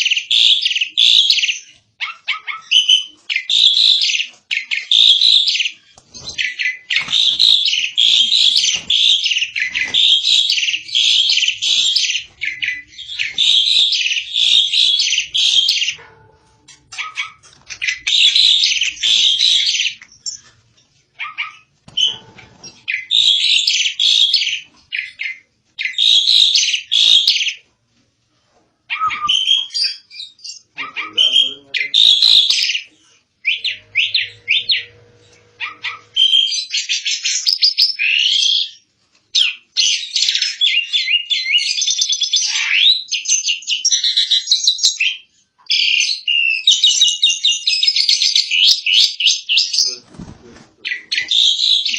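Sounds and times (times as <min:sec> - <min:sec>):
bird chattering loudly: 0:00.0 - 0:16.0, 0:30.8 - 0:34.9.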